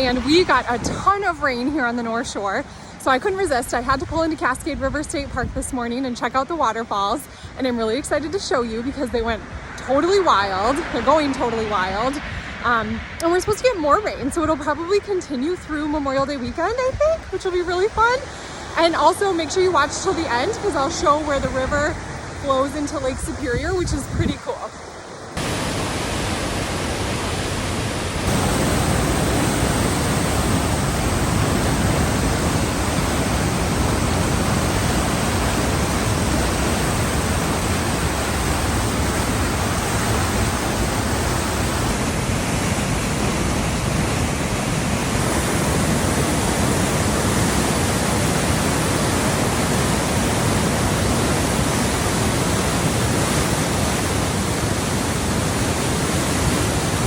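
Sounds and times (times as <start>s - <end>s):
river rushing over waterfalls: 17.2s - 57.0s.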